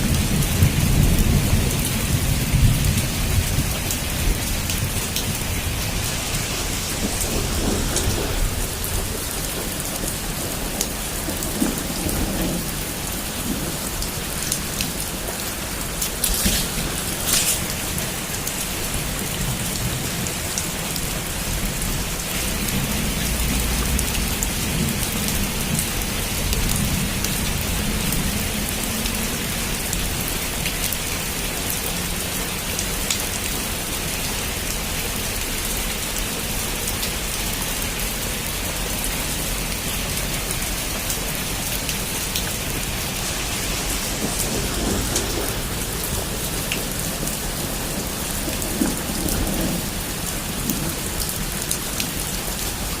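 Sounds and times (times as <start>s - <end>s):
low rumble of thunder: 0.0s - 29.9s, 42.1s - 51.3s
heavy rain on a rooftop: 0.0s - 53.0s.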